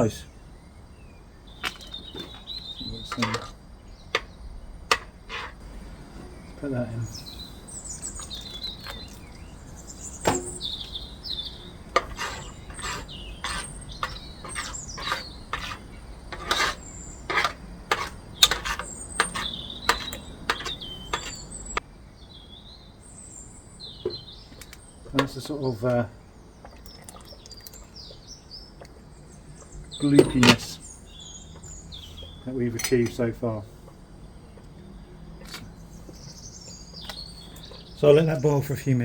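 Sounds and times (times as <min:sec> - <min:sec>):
birds chirping: 0:00.0 - 0:39.0
spoon scraping saucepan: 0:01.6 - 0:03.6, 0:04.9 - 0:21.8, 0:29.6 - 0:33.2.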